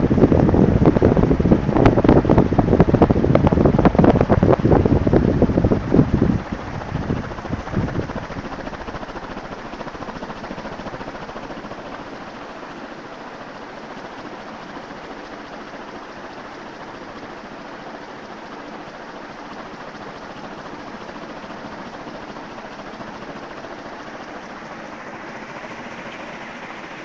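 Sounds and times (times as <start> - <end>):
wind buffeting microphone: 0.0 - 11.8
ceiling fan whirring: 0.0 - 27.0.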